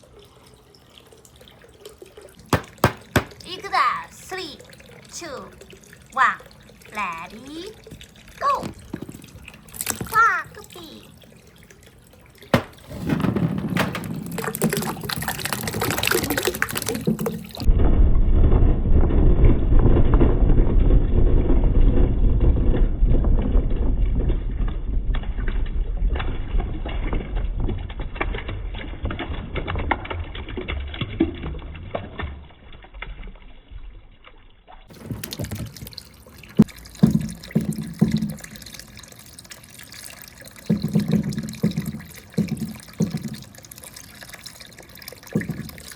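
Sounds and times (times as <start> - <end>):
water running and splashing: 0.0 - 17.7, 26.1 - 45.9
balls knocking in channel: 2.5 - 3.5, 12.5 - 17.7, 40.7 - 43.5, 45.3 - 45.9.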